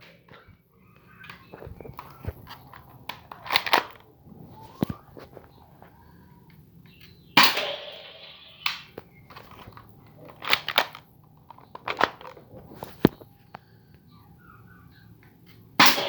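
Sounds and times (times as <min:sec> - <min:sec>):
airsoft pistol cocking and firing: 0:07.4 - 0:09.0.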